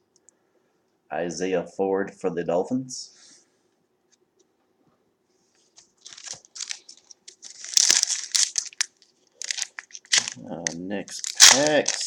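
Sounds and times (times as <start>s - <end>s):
foil wrapper tearing and crinkling: 6.0s - 12.0s.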